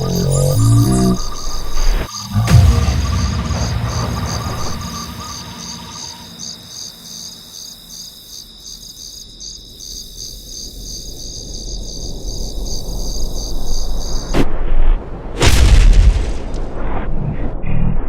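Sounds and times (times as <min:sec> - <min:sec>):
low rumble: 0:00.0 - 0:06.4
cricket chirping: 0:00.0 - 0:14.3.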